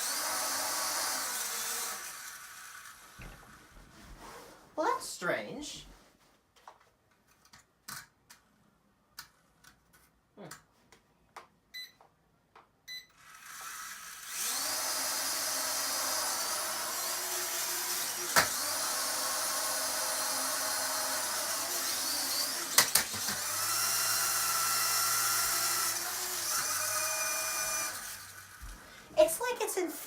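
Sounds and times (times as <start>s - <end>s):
toy drone motors whining: 0.0s - 3.2s, 13.2s - 28.8s.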